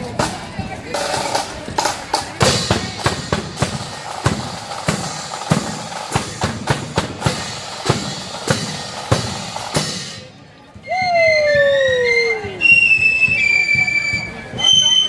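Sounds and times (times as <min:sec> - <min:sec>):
marching band playing: 0:00.0 - 0:15.0
snare drum strokes: 0:00.2 - 0:10.3.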